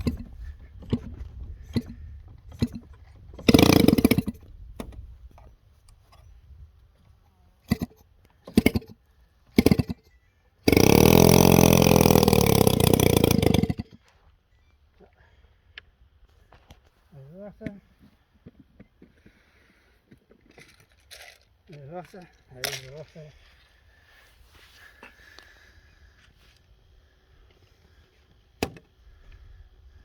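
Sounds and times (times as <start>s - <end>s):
model aircraft engine starting: 0.0s - 5.0s, 7.6s - 14.0s.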